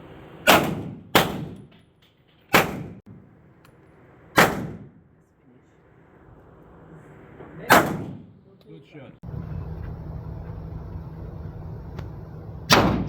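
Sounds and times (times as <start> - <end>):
pistol shots with ringing echo: 0.4 - 1.7, 2.5 - 3.0, 4.4 - 5.0, 7.7 - 8.3, 12.7 - 13.0.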